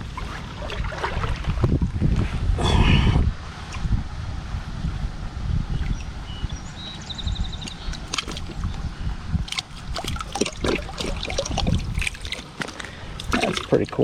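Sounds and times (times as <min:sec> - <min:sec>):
water sloshing and splashing: 0:00.0 - 0:02.1, 0:07.6 - 0:14.0
wind rumble on microphone: 0:00.0 - 0:14.0
sharp splashes: 0:07.7 - 0:08.8, 0:09.4 - 0:14.0.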